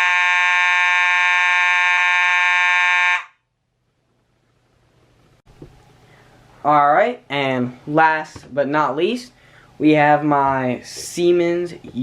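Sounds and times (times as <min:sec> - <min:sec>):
fire alarm horn: 0:00.0 - 0:03.5.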